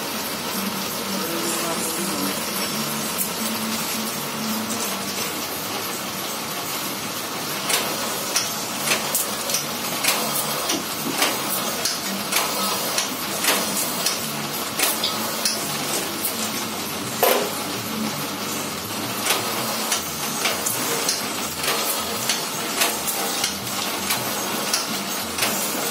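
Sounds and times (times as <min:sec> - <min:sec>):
sharp machine clacks: 0:07.4 - 0:25.9.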